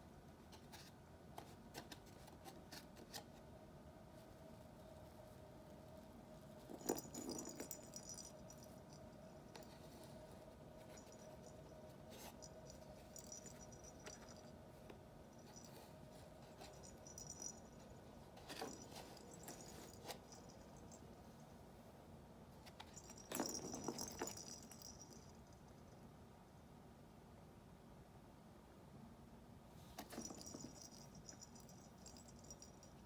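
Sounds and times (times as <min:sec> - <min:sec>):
kitten scratching a toy box: 0:15.4 - 0:21.0.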